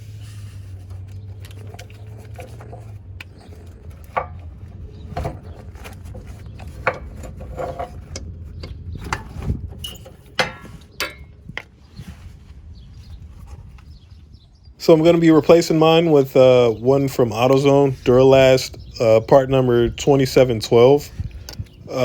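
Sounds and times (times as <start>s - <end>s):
low hum: 0.0s - 22.0s
metal knocks and scrapes: 0.4s - 11.7s.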